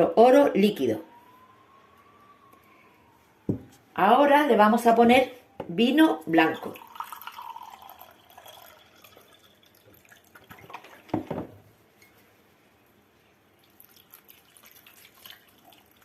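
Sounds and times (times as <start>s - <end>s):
thump: 3.5s - 3.7s
liquid splashing and dripping: 6.8s - 11.2s, 13.6s - 16.0s.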